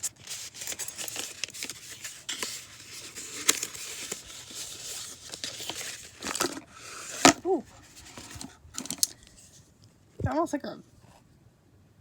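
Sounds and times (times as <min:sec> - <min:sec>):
packaging rustling and crinkling: 0:00.0 - 0:09.6.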